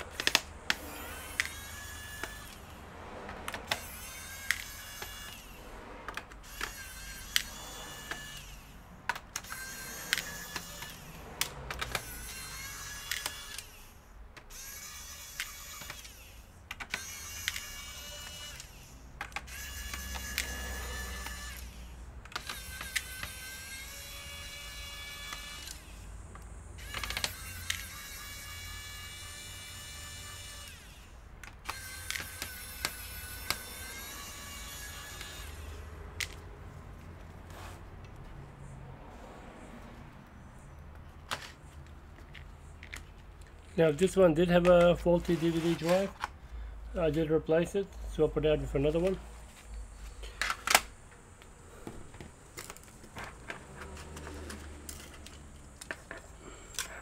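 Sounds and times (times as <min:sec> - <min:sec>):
small electric motor whining: 0:00.0 - 0:02.8, 0:09.4 - 0:26.1, 0:26.7 - 0:36.4.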